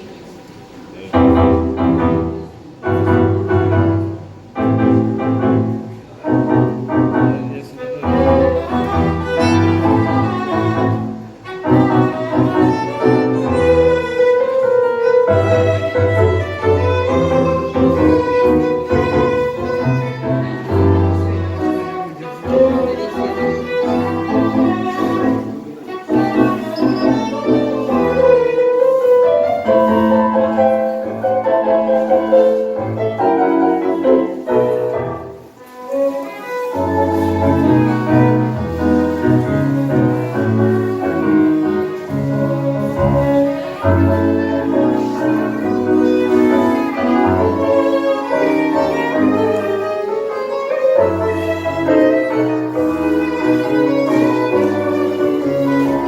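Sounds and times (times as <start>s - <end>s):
piano: 0.0s - 56.0s
bowed strings melody: 1.0s - 56.0s
double bass: 1.1s - 56.0s.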